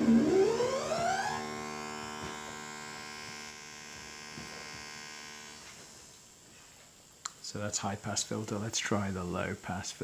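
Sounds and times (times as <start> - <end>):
buzzy synthesizer drone: 0.0 - 6.4.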